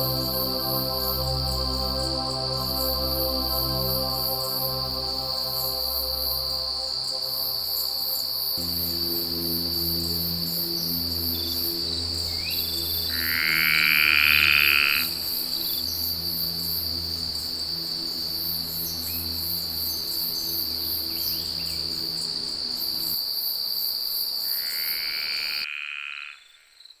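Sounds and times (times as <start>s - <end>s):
low pulsing hum: 0.0s - 23.2s
crickets trilling: 0.0s - 27.0s
high chirping insects: 0.0s - 27.0s
loud buzzy call: 8.6s - 15.2s.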